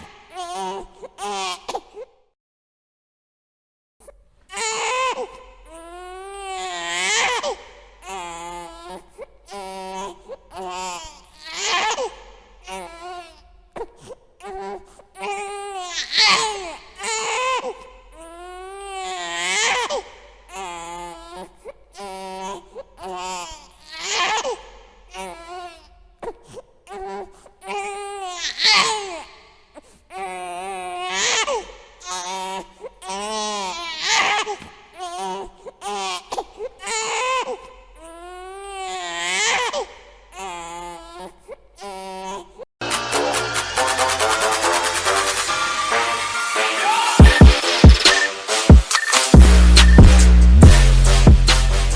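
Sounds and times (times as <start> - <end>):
infant crying: 0.0 - 2.0, 4.5 - 29.3, 30.1 - 42.7.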